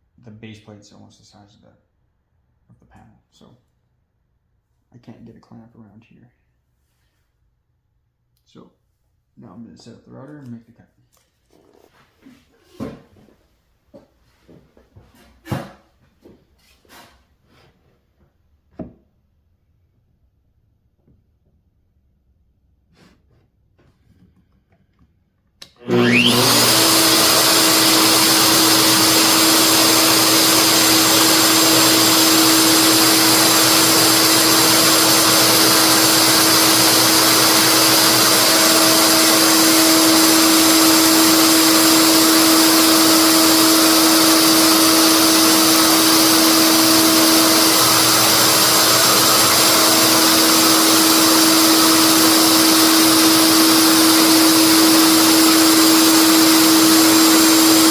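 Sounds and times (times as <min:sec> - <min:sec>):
wood router whining: 0:25.6 - 0:57.9.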